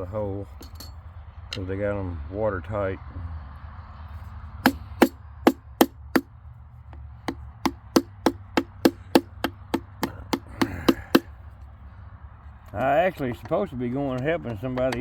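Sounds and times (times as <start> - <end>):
hammer tapping on metal tool: 4.6 - 6.3, 6.9 - 11.3, 14.2 - 15.0.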